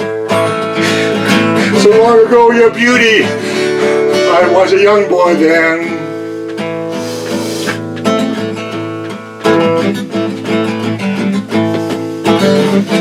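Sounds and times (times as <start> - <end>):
strummed acoustic guitar: 0.0 - 13.0
person singing: 0.7 - 6.2.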